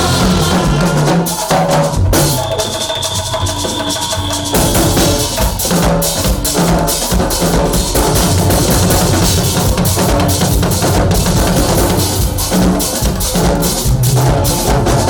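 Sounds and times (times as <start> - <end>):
bass line: 0.0 - 1.4
upbeat music with drum kit: 0.0 - 15.0.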